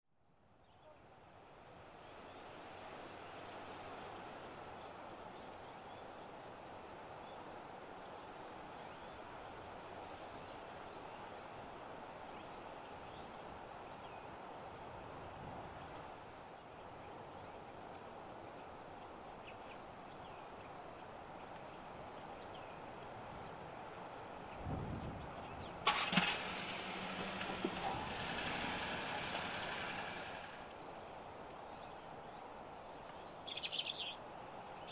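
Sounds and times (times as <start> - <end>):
small birds chirping: 3.1 - 25.9, 26.6 - 34.9.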